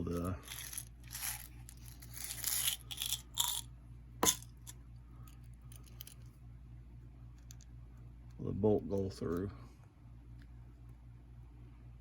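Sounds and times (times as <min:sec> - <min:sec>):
rustling scrapes: 0:00.4 - 0:03.0.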